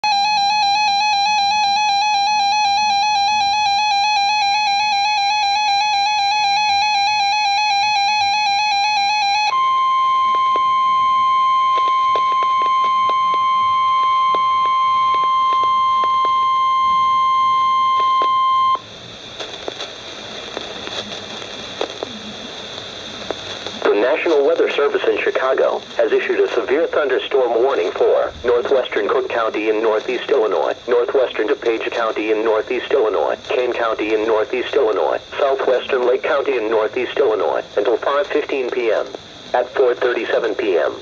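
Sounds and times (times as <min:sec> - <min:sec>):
steady alarm tone: 0:00.0 - 0:18.8
warbling electronic alarm: 0:00.0 - 0:18.8
crackly radio static: 0:00.1 - 0:41.0
person announcing over radio speaker: 0:23.8 - 0:41.0.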